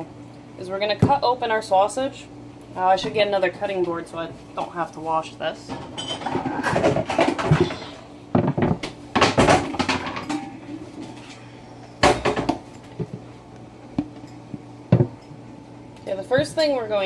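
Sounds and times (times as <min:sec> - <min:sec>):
kitchenware knocking and rattling: 0:05.7 - 0:10.6, 0:12.0 - 0:12.6.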